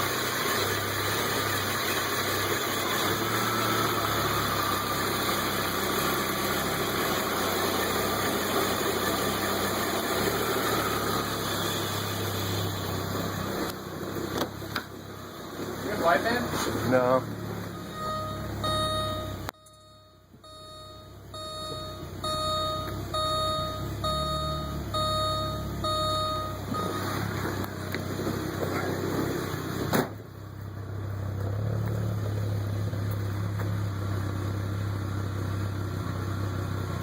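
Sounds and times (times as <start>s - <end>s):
car engine idling: 0.0s - 37.0s
car warning chime beeping: 15.0s - 16.4s, 17.5s - 27.5s.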